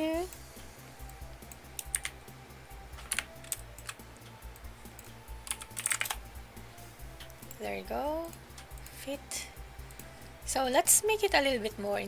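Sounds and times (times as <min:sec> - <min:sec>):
quiet background music: 0:00.0 - 0:12.0
keyboard keys clicking: 0:01.1 - 0:02.2, 0:03.0 - 0:06.3.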